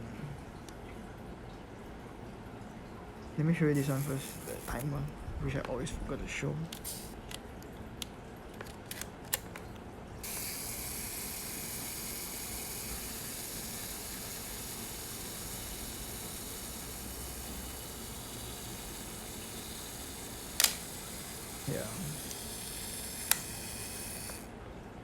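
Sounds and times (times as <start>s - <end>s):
camera self-timer whirring: 3.6s - 5.1s, 6.7s - 7.4s, 8.0s - 9.6s, 10.2s - 24.6s.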